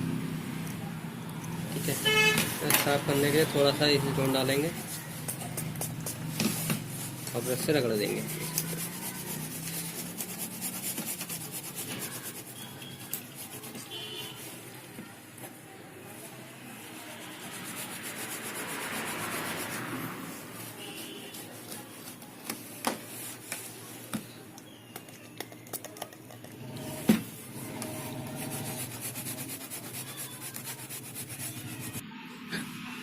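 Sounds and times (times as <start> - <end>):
brush scrubbing circuit board: 6.9 - 14.7, 16.7 - 21.7, 27.9 - 32.0.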